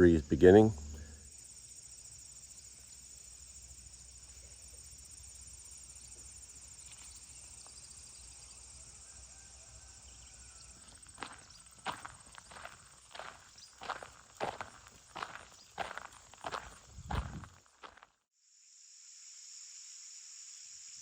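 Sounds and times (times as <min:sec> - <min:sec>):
crickets chirping: 0:00.0 - 0:21.0
footsteps: 0:10.8 - 0:18.1.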